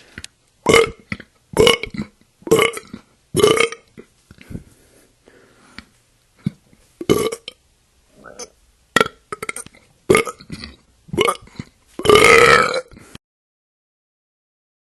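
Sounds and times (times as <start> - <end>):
burp: 0.6 - 4.1, 6.4 - 13.0
person belching: 0.6 - 4.1, 6.4 - 13.0.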